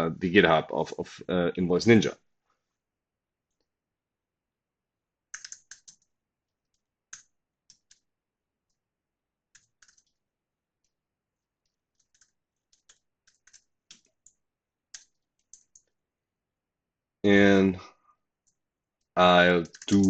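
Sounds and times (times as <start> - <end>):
faint keyboard keystrokes: 5.4 - 6.1, 9.6 - 10.2, 11.9 - 16.0, 19.6 - 20.0.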